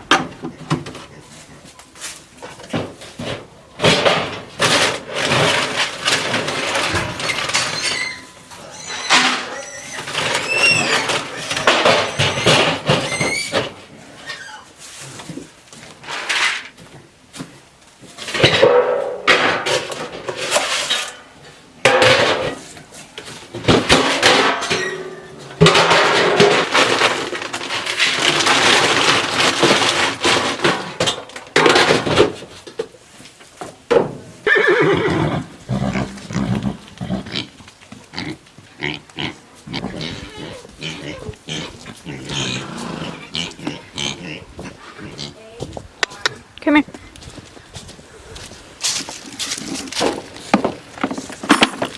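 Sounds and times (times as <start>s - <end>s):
horses whinnying: 7.6s - 14.7s, 34.4s - 37.6s, 39.8s - 45.0s.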